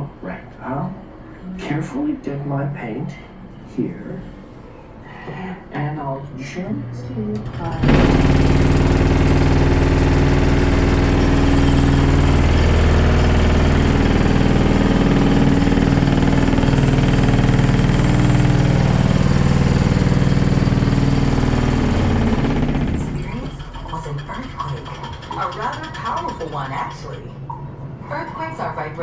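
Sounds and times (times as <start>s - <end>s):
earthquake rumble: 7.5s - 24.6s.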